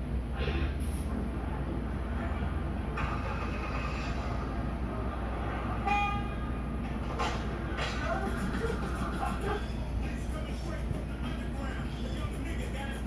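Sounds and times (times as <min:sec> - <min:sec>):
passing traffic: 0:00.0 - 0:13.0
car horn toot: 0:05.8 - 0:06.4.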